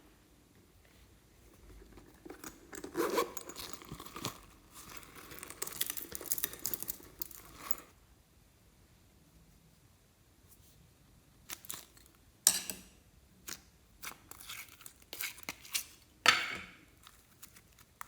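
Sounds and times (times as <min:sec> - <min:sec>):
hands crinkling and crackling: 0:02.1 - 0:07.9, 0:17.0 - 0:18.0.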